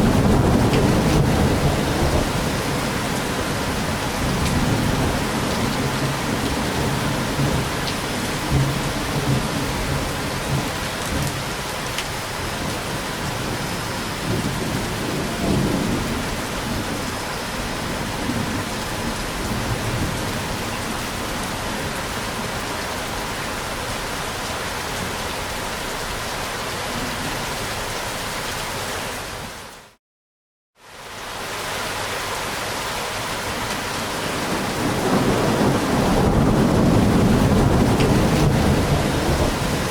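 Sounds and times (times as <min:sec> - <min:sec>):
low rolling thunder: 0:00.0 - 0:11.4, 0:12.4 - 0:22.4, 0:34.0 - 0:39.9
heavy rain: 0:00.0 - 0:30.0, 0:30.8 - 0:39.9.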